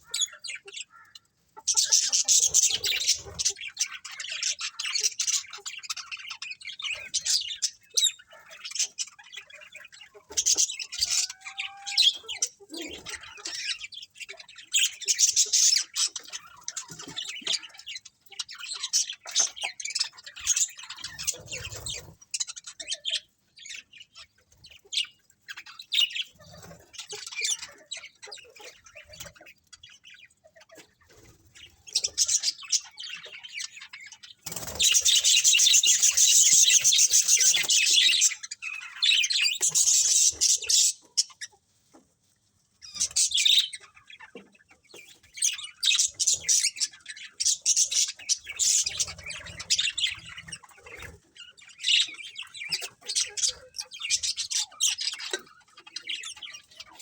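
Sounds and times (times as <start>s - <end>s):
budgerigars chattering and chirping: 0.0s - 42.2s, 42.8s - 57.0s.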